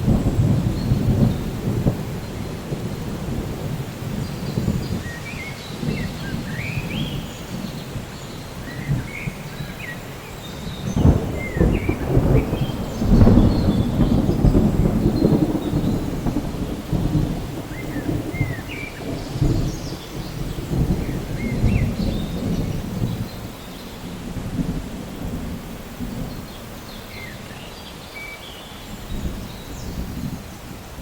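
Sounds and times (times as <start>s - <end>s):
rumbling thunder: 0.0s - 27.6s, 28.9s - 31.0s
steady rain: 0.0s - 31.0s
small birds chirping: 4.2s - 24.1s.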